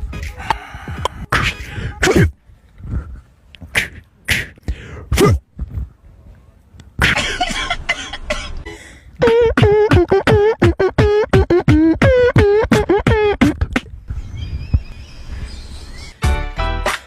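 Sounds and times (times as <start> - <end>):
squeaky sucking pops: 3.6 - 4.8, 9.3 - 16.2.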